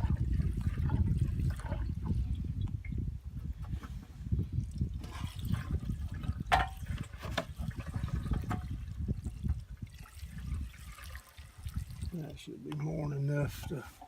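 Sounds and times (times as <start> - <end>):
gasoline trickling: 0.0 - 12.5.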